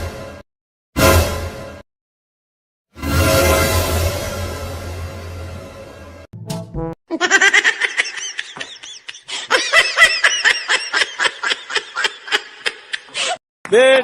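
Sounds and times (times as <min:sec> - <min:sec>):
high-pitched laughter: 0:07.1 - 0:13.4.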